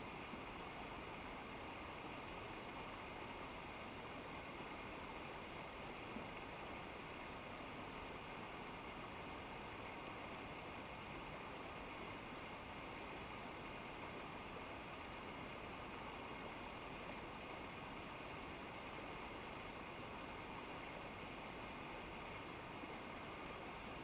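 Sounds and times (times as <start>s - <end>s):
river or waterfall rushing: 0.0s - 24.0s.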